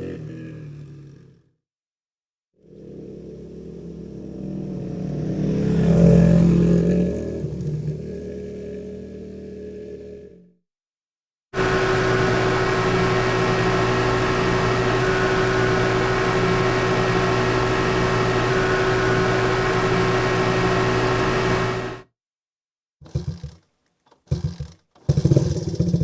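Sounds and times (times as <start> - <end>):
motorcycle engine running: 23.0 - 26.0.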